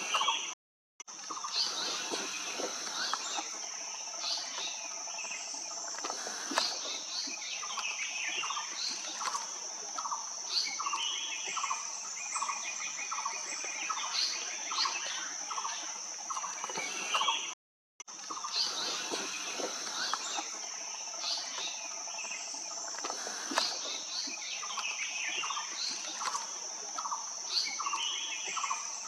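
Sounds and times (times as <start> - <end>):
high-pitched insect drone: 13.2 - 17.6.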